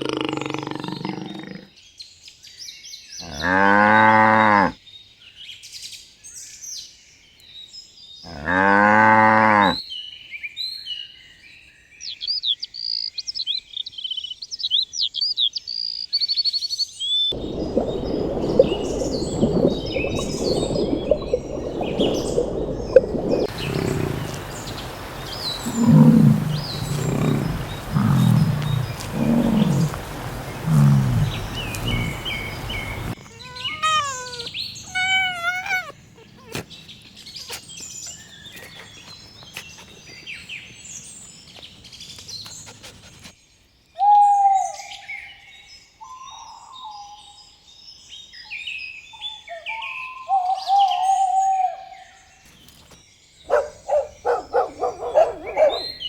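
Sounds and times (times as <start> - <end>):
low pulsing animal calls: 17.4 - 40.2, 53.5 - 56.0
high sliding bird-like calls: 17.5 - 37.8, 53.5 - 56.0.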